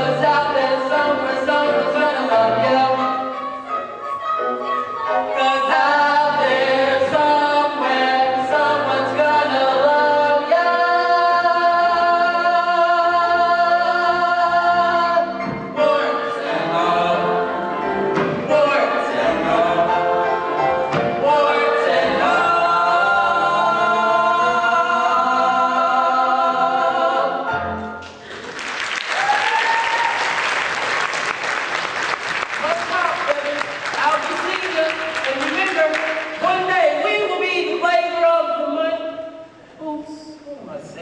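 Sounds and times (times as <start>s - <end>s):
backing music: 0.0s - 28.7s.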